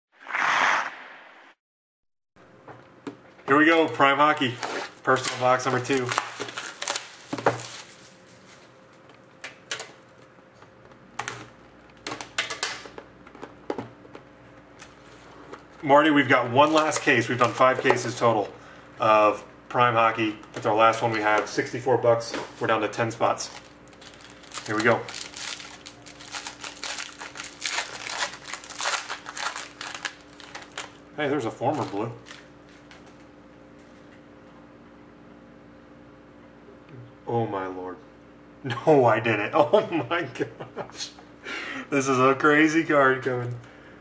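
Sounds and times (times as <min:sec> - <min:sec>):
packaging rustling: 0:04.4 - 0:08.8, 0:23.2 - 0:31.0, 0:31.7 - 0:32.9
plastic wrapping crinkling: 0:04.4 - 0:08.8, 0:23.2 - 0:31.0, 0:31.7 - 0:33.1.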